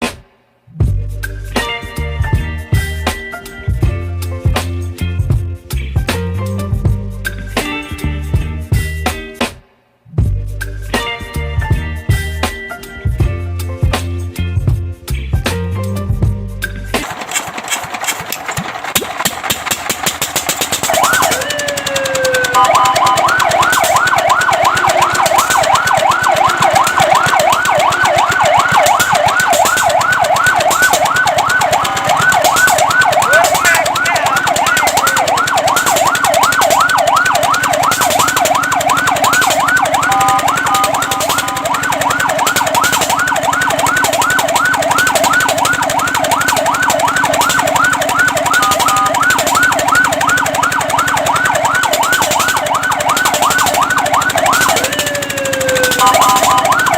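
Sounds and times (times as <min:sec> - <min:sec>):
fire truck siren yelp: 0:20.5 - 0:56.9.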